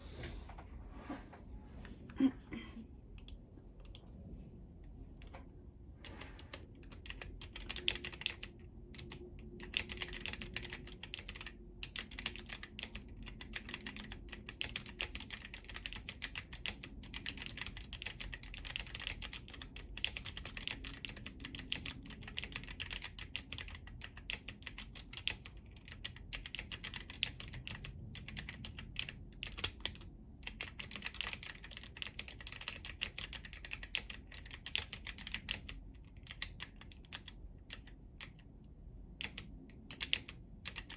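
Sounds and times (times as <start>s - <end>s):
clicky keyboard typing: 6.1s - 40.9s.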